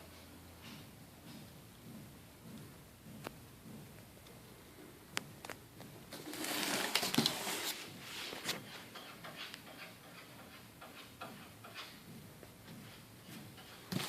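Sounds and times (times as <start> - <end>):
packaging rustling: 5.4 - 8.6.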